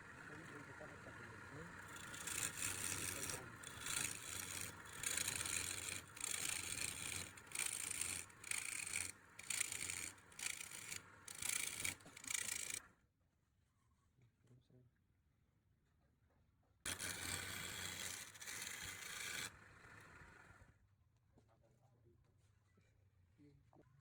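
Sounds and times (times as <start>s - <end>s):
hand tool scraping wood: 1.8s - 12.8s, 16.9s - 19.5s.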